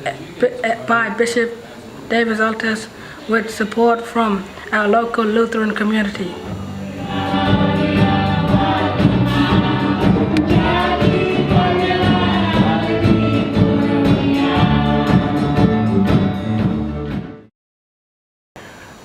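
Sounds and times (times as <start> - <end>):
choir singing a hymn: 6.4 - 17.0.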